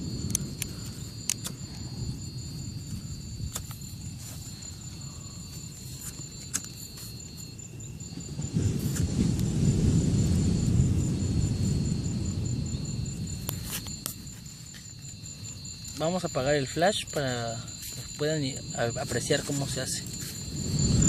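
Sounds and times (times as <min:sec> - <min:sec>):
high-pitched insect trill: 0:00.0 - 0:21.0
sea surf rumble: 0:08.2 - 0:13.5, 0:18.6 - 0:21.0.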